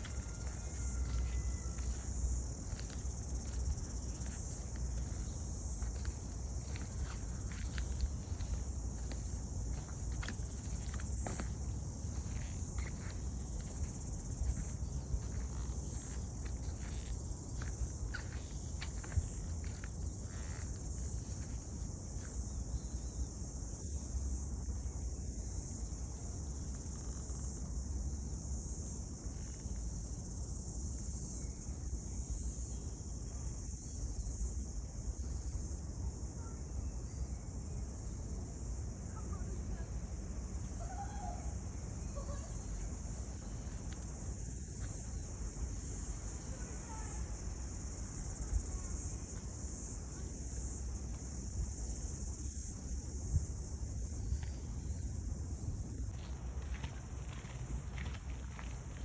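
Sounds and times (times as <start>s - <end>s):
footsteps on forest path: 0.0s - 23.4s, 42.2s - 46.8s, 55.8s - 59.0s
high-pitched insect chorus: 0.0s - 59.0s.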